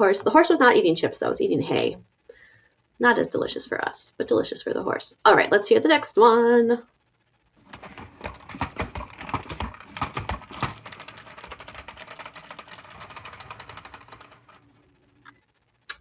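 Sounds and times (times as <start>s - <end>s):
salad spinner clicking: 7.7s - 15.3s.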